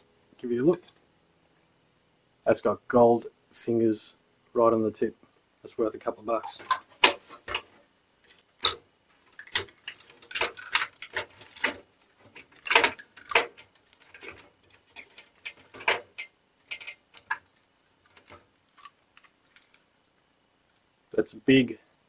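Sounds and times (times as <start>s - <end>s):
clicks and knocks of computer parts: 6.4s - 17.5s.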